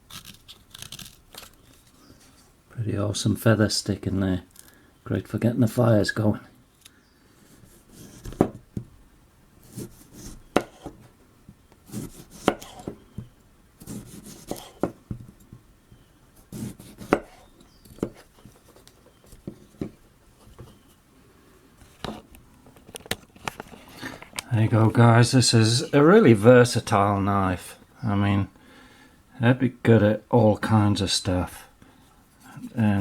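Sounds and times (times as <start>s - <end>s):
knife shaving wood: 0.0s - 2.4s, 7.3s - 8.6s, 9.6s - 11.1s, 11.8s - 20.0s.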